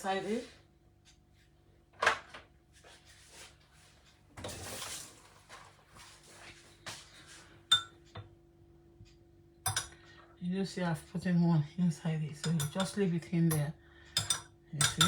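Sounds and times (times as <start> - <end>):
glass and dishes clinking: 7.7 - 8.3, 9.7 - 10.0, 12.4 - 15.0.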